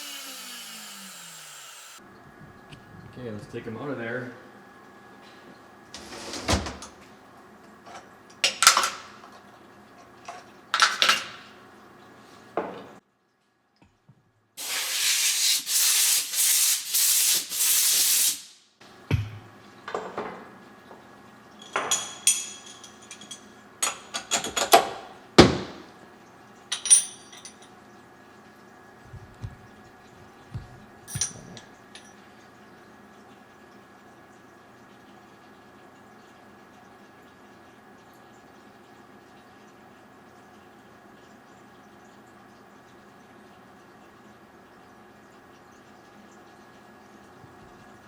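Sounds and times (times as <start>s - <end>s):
compressed air hissing: 14.6s - 18.6s.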